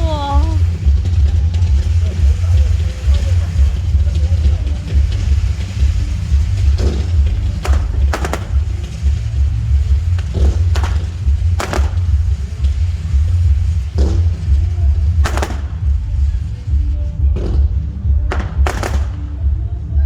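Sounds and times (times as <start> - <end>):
fireworks bangs: 0.0 - 20.0
wind buffeting microphone: 0.0 - 20.0.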